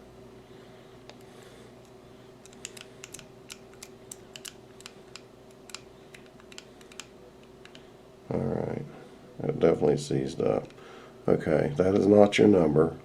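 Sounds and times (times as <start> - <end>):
combination lock dial clicking: 2.4 - 7.8.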